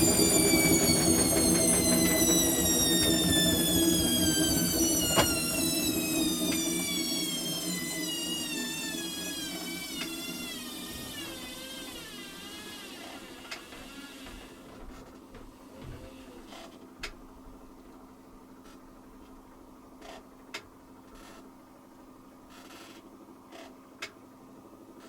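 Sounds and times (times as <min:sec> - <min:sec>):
washing machine motor whine: 0:00.0 - 0:14.7.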